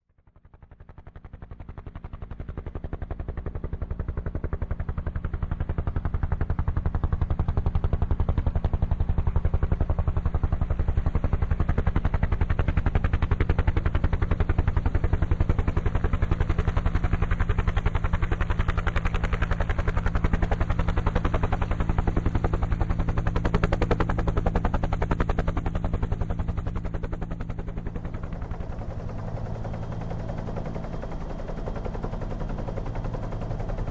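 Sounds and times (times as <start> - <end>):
helicopter rotor chop: 0.4 - 33.9
turbine engine drone: 9.6 - 33.9.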